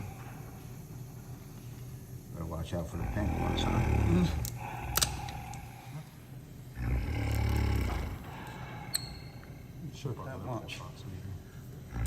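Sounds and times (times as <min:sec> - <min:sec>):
bear snoring: 0:02.8 - 0:06.1, 0:06.7 - 0:08.5.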